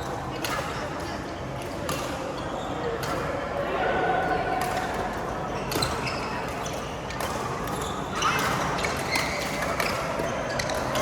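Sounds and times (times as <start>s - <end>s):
shoes squeaking on court floor: 2.3s - 3.2s, 5.5s - 11.0s
rackets striking shuttlecock: 7.0s - 11.0s.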